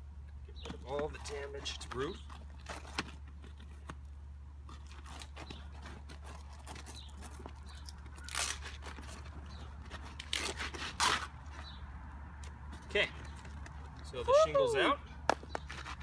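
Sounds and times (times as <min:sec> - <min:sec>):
roof shingle tearing: 0:00.8 - 0:11.7
scraping and crackling: 0:00.8 - 0:11.8.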